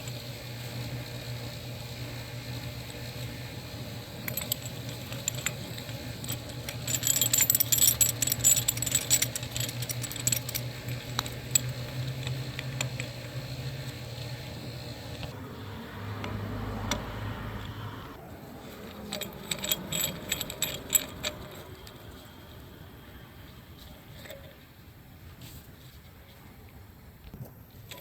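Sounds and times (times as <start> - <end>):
metal tool pieces clinking: 4.2 - 13.1, 18.8 - 22.0.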